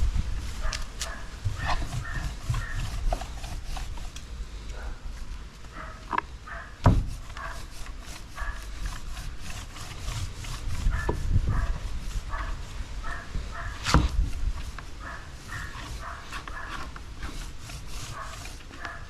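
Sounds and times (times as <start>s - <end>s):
dog yipping and barking: 5.8s - 6.8s, 10.9s - 13.8s, 15.0s - 16.8s
sharp knocks: 6.8s - 7.2s.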